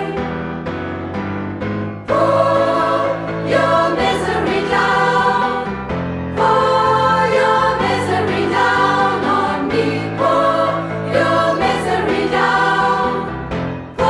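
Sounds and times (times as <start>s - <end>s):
women's choir singing: 0.0s - 0.3s, 2.1s - 14.0s.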